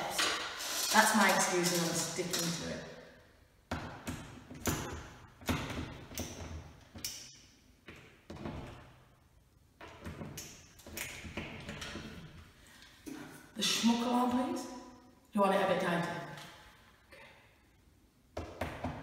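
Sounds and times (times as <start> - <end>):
screws tightened into ceiling: 0.1 - 2.7.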